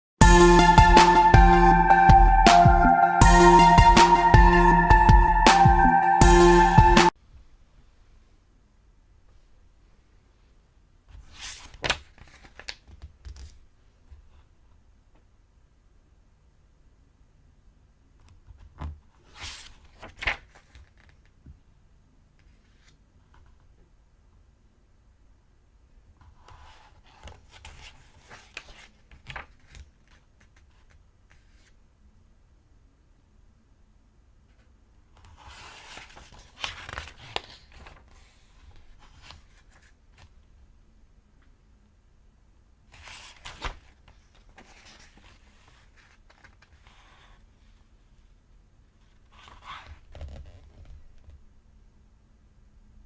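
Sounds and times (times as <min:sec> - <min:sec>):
paper pages turning: 0:11.1 - 0:13.6, 0:18.8 - 0:21.4, 0:22.4 - 0:23.6, 0:26.3 - 0:31.8, 0:35.2 - 0:40.3, 0:42.9 - 0:47.4, 0:49.3 - 0:51.0.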